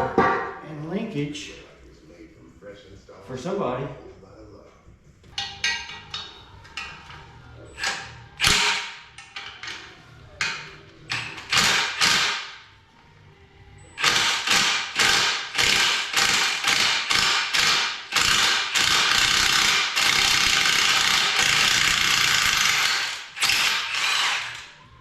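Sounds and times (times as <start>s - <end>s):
power tool bursts: 11.5s - 12.4s, 14.0s - 24.6s.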